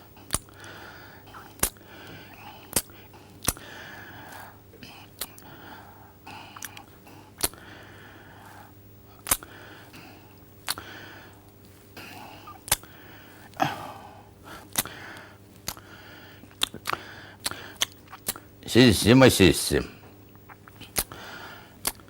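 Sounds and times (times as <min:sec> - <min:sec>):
low recording hum: 0:00.0 - 0:22.0
man's lip smacks and mouth clicks: 0:00.2 - 0:00.7, 0:01.3 - 0:03.6, 0:04.4 - 0:05.5, 0:06.5 - 0:07.6, 0:08.4 - 0:10.8, 0:11.4 - 0:13.6, 0:14.6 - 0:18.5, 0:20.2 - 0:21.2, 0:21.8 - 0:22.0
breathy in-breaths: 0:00.5 - 0:17.8, 0:21.1 - 0:21.8.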